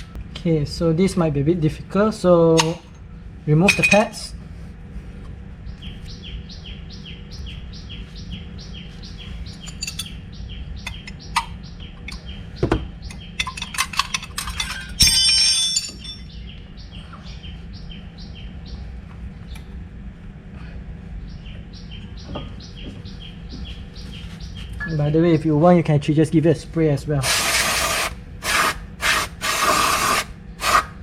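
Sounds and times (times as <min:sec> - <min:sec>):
low background rumble: 0:00.0 - 0:31.0
bird chirping: 0:05.7 - 0:13.8, 0:15.8 - 0:19.8, 0:21.2 - 0:25.7
sharp metal clicks and clinks: 0:09.6 - 0:10.2, 0:13.1 - 0:16.3.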